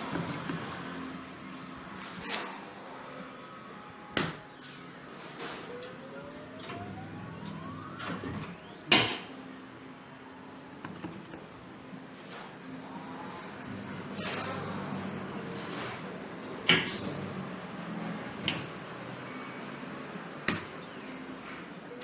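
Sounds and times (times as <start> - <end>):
machine hum: 0.0 - 22.0
rising electronic tone: 3.1 - 8.9.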